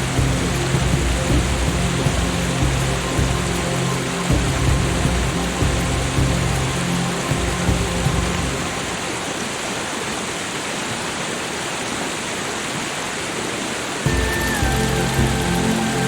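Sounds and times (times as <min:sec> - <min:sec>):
soft background music: 0:00.0 - 0:10.1, 0:14.1 - 0:16.0
rushing water hiss: 0:00.0 - 0:16.0.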